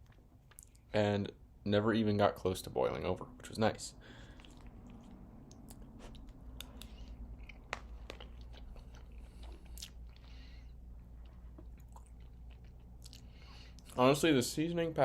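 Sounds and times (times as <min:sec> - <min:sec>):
person chewing food: 0:00.0 - 0:00.9, 0:04.1 - 0:14.0.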